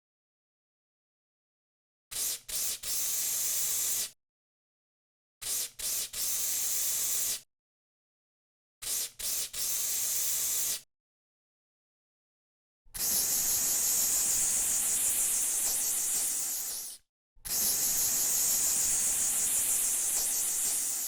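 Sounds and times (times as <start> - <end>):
aerosol can spraying: 2.1 - 4.1, 5.4 - 7.4, 8.8 - 10.8, 13.0 - 21.0.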